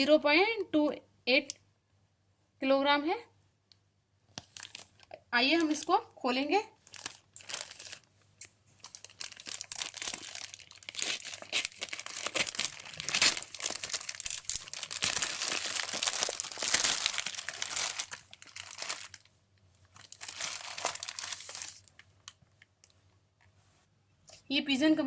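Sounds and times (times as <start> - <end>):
packaging crackling and tearing: 4.4 - 5.9, 6.8 - 8.1, 8.8 - 19.3, 20.0 - 22.4.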